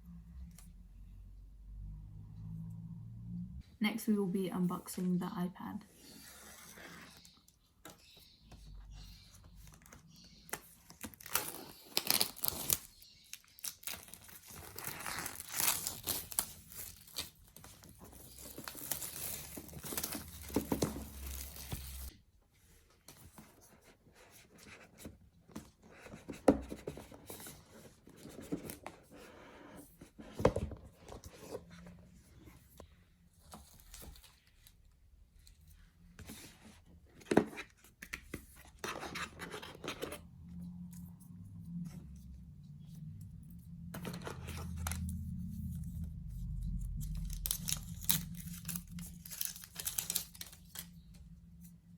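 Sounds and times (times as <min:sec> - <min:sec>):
packaging tearing and crinkling: 0:10.8 - 0:22.1, 0:47.0 - 0:51.0.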